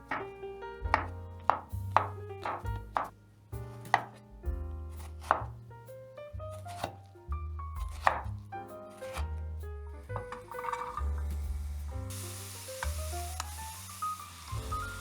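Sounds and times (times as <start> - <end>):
knife chopping on cutting board: 0.0 - 0.3, 0.9 - 3.2, 3.8 - 4.2, 4.9 - 5.6, 6.5 - 7.0, 7.8 - 9.3
background music with bass line: 7.3 - 12.1.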